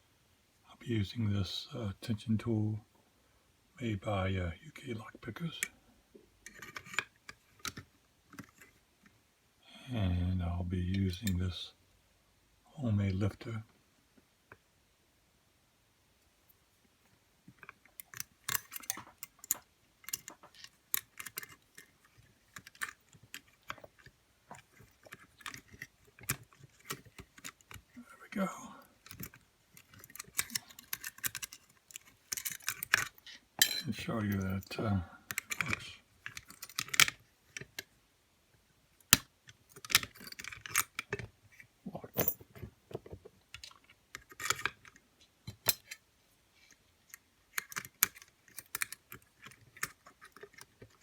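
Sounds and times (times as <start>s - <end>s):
metallic clicks of lock picking: 6.4s - 8.7s, 17.6s - 27.8s, 29.0s - 34.7s, 35.3s - 37.9s, 39.0s - 41.3s, 43.6s - 46.0s, 47.1s - 51.0s
metallic lock clicks: 18.0s - 21.9s.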